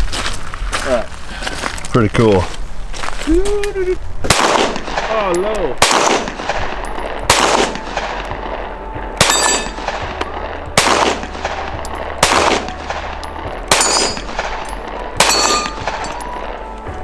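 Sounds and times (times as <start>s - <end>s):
pistol shots with echo: 4.2s - 17.0s.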